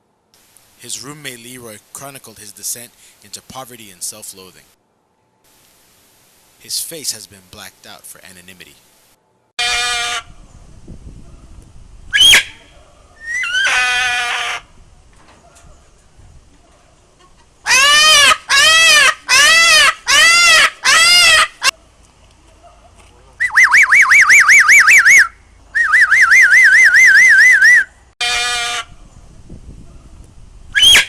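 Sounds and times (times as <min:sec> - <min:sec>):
parrot warbling whistles: 0:12.1 - 0:12.6, 0:13.2 - 0:14.6, 0:23.4 - 0:27.9, 0:30.8 - 0:31.0
parrot squawking: 0:13.2 - 0:14.6, 0:17.7 - 0:21.7.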